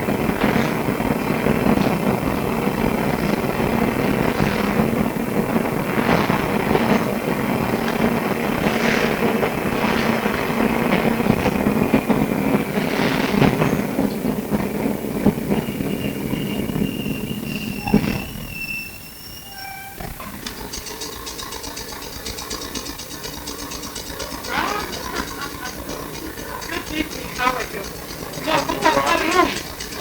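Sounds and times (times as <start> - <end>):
tram body and wheels rattling: 0.0 - 30.0
tram low hum: 0.0 - 30.0
thin high squeal: 15.6 - 21.9.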